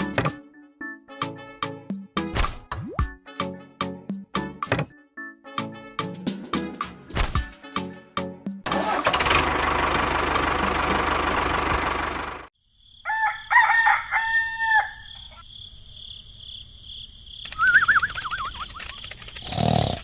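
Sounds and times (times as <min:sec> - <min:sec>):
rooster crowing: 0:13.0 - 0:15.4.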